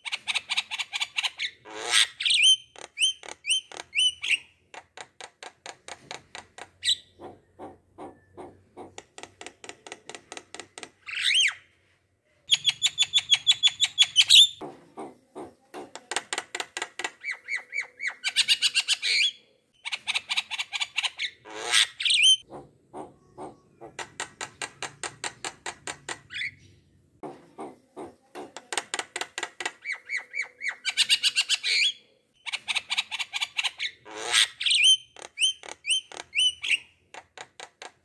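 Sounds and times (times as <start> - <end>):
bird squawks: 6.8 - 9.0, 21.0 - 24.0.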